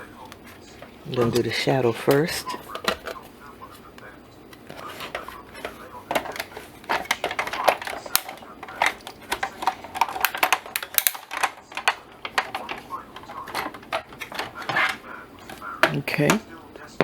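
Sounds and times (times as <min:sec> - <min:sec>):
clicks and taps of cutting plates: 0:02.1 - 0:03.2, 0:04.0 - 0:17.0.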